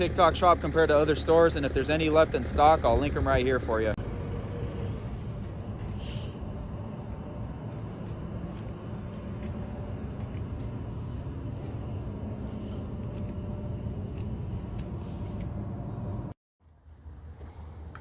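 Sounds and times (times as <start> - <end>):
skid steer engine rumbling: 0.0 - 18.0.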